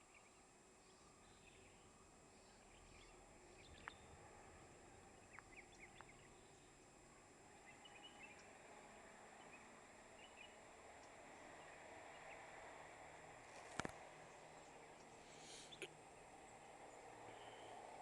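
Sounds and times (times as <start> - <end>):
distant birds chirping: 0.0 - 8.7, 9.3 - 18.0
faint ticks: 3.7 - 4.1, 5.3 - 6.2, 11.0 - 11.2.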